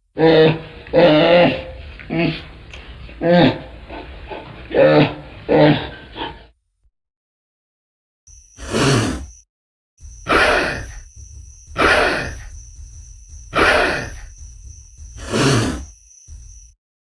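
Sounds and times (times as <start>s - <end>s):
creature calls: 10.2s - 11.0s, 11.8s - 12.5s, 13.5s - 14.3s.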